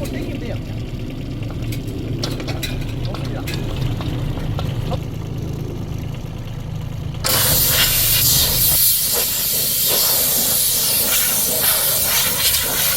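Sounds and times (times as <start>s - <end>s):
excavator engine rumble: 0.0s - 12.9s
pressure washer jet hissing: 7.3s - 12.9s.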